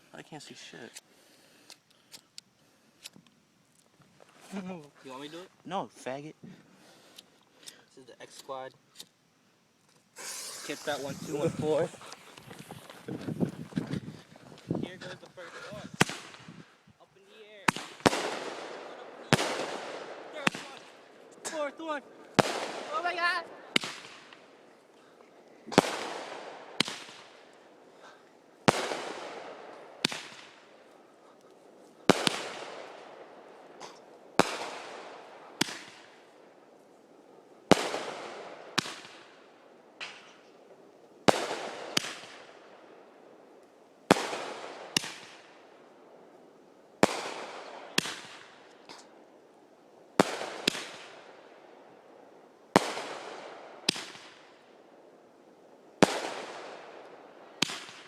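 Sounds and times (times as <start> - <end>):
fireworks bangs: 10.2 - 16.7, 17.3 - 24.7, 25.6 - 30.9, 32.0 - 36.4, 37.7 - 40.6, 41.2 - 42.7, 44.1 - 45.6, 47.0 - 49.1, 50.2 - 51.7, 52.7 - 54.6, 56.0 - 58.0.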